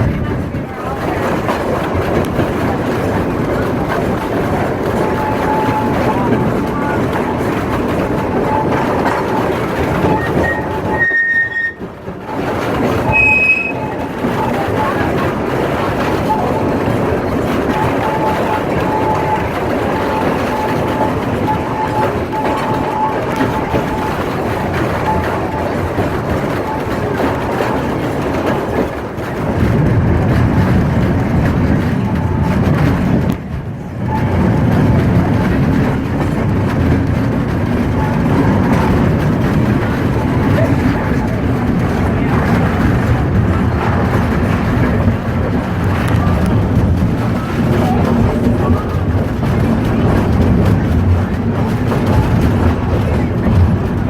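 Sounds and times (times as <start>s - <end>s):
railroad cars rumbling on track: 0.0s - 54.0s
high-pitched wheel squeals: 8.2s - 15.0s.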